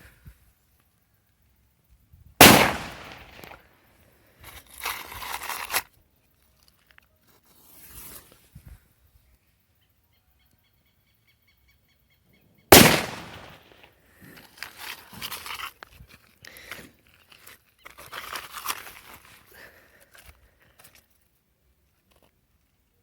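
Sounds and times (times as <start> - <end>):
firecracker bang: 2.4 - 3.6, 12.7 - 13.7
rustling noise: 7.2 - 8.8.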